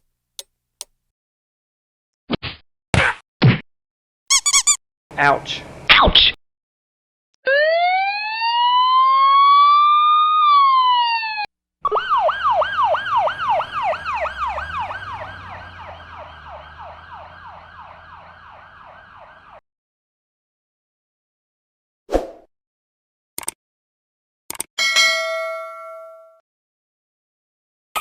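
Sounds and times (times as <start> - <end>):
siren wailing and yelping: 7.5 - 19.6.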